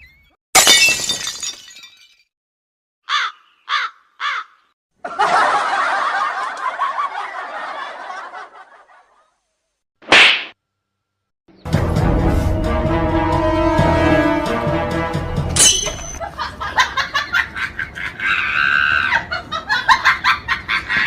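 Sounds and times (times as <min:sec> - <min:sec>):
crow cawing: 0:03.0 - 0:04.7
crowd laughter: 0:05.0 - 0:09.4, 0:16.2 - 0:21.0.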